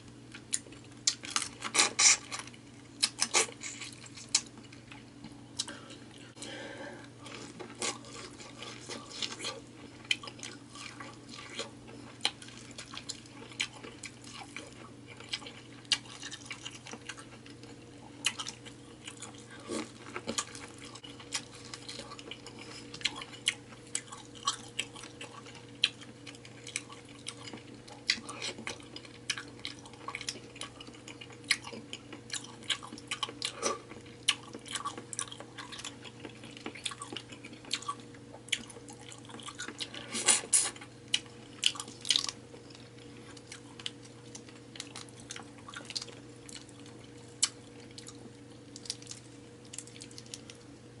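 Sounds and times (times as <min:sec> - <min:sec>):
faint steady hum: 0:00.0 - 0:51.0.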